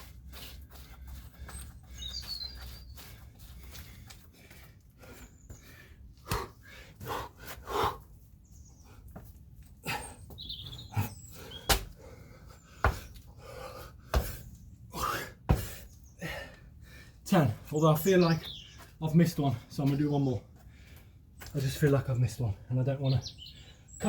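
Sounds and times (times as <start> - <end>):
man panting: 0.0 - 17.2
birds chirping faintly: 0.0 - 24.0
hands and feet thudding on ground: 11.0 - 12.0, 12.8 - 13.2, 14.1 - 14.4, 15.5 - 15.8.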